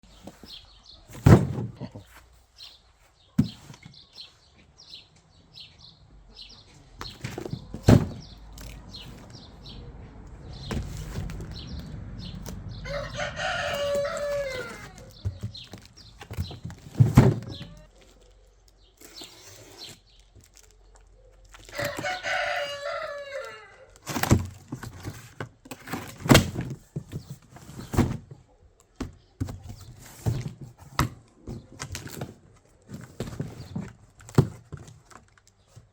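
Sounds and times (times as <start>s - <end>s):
rooster crowing: 12.8s - 15.1s, 21.7s - 24.0s.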